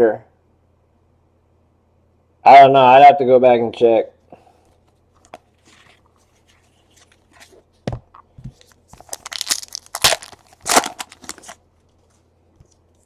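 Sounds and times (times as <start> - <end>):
plastic wrapper tearing and crinkling: 9.0 - 11.6.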